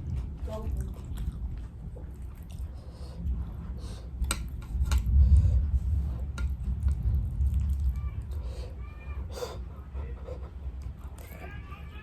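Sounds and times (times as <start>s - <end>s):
chewing crispy fried chicken: 0.0s - 5.1s
deep jaw rumble: 0.0s - 8.8s.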